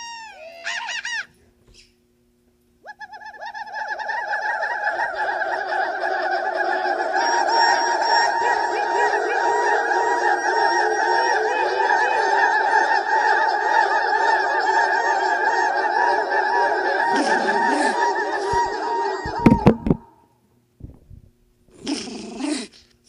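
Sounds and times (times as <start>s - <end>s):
chorus of chirping calls: 0.0s - 2.0s, 2.8s - 20.2s
creature chirps: 2.8s - 4.5s, 17.1s - 19.4s.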